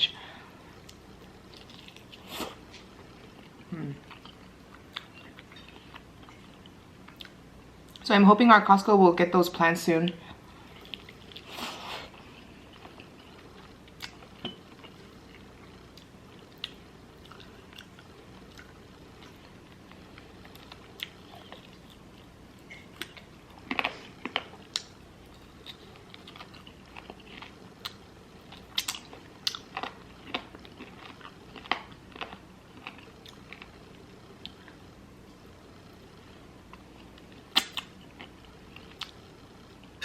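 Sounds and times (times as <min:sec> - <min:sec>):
person chewing and biting: 0:10.6 - 0:33.8.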